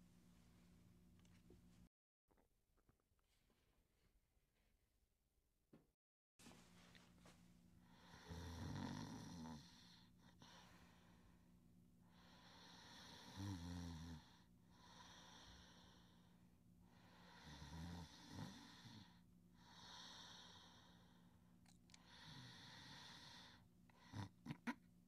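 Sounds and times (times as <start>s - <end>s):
low snore: 8.0s - 10.1s, 12.2s - 16.1s, 17.1s - 21.0s, 22.1s - 24.6s
slow deep breathing: 9.7s - 13.4s, 14.2s - 24.1s.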